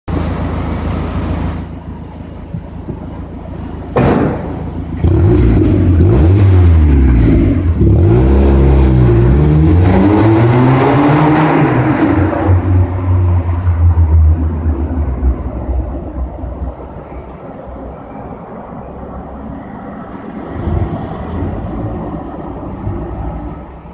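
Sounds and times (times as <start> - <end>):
car engine revving: 3.6 - 16.5.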